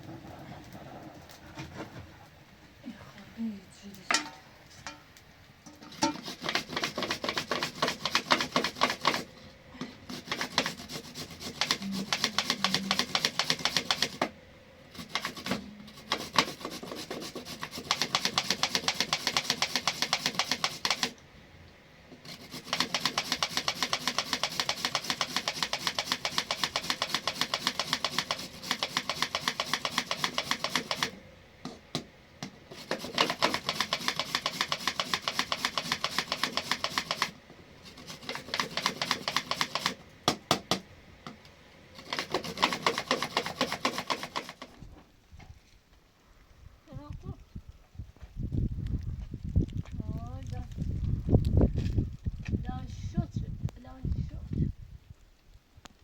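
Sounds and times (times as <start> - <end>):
rapid even tapping: 10.2 - 14.3, 22.4 - 31.1, 38.0 - 40.8.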